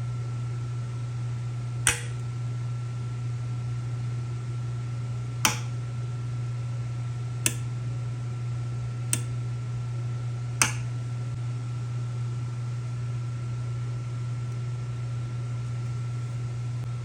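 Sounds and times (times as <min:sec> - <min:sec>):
steady low hum: 0:00.0 - 0:17.0
sharp clicks: 0:07.5 - 0:07.7.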